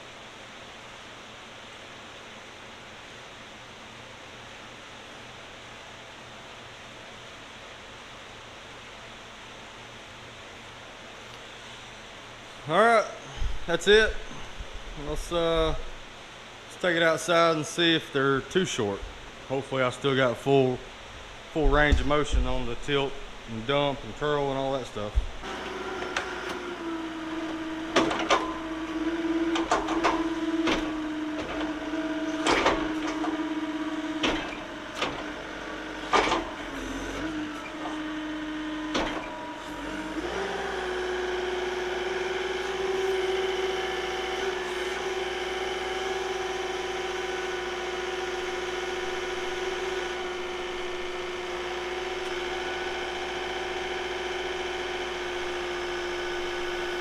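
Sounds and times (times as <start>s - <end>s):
track loader engine whine: 12.4s - 57.0s
grapple clanking and knocking: 20.9s - 40.3s.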